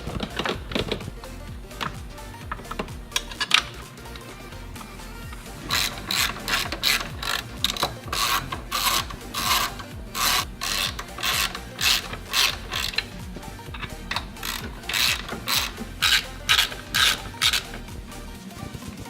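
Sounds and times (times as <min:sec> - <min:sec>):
ratchet wrench clicking: 0:05.7 - 0:17.9.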